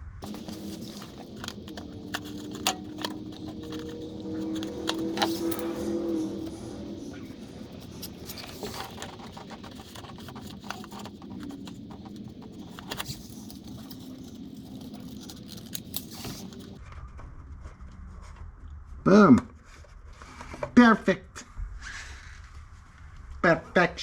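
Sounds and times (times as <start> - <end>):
small clicks taps and rustles: 0.2 - 16.8.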